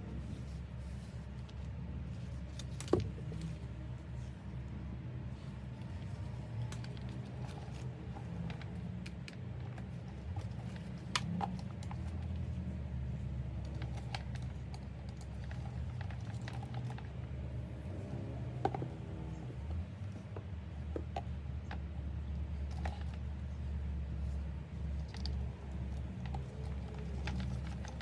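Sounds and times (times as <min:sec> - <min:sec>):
clicks and taps handling bag: 0:05.6 - 0:17.2, 0:18.5 - 0:28.0.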